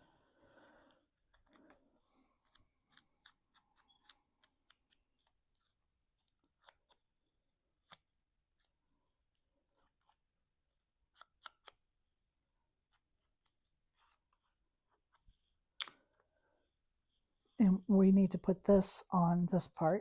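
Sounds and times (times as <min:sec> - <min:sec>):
cardstock clicks and snips: 0:06.3 - 0:07.0, 0:11.1 - 0:11.8.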